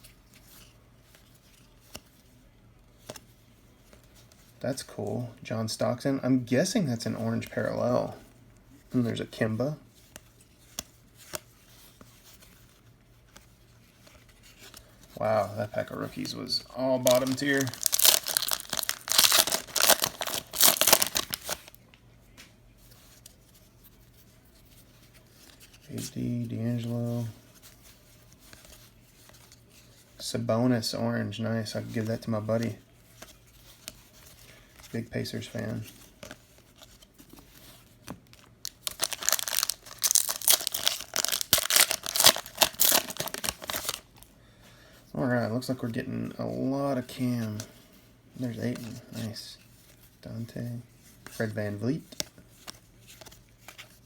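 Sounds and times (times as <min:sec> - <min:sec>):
faint card handling: 0:00.0 - 0:05.2, 0:06.8 - 0:30.2, 0:31.8 - 0:44.3, 0:47.0 - 0:54.0
foil wrapper tearing and crinkling: 0:17.0 - 0:21.8, 0:38.6 - 0:44.0.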